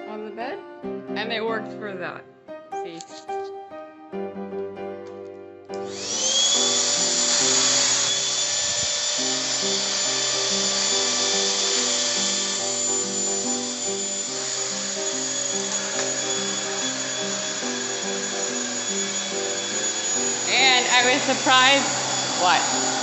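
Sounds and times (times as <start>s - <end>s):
stick vacuum motor whining: 5.7s - 23.0s
rushing suction noise: 5.9s - 23.0s.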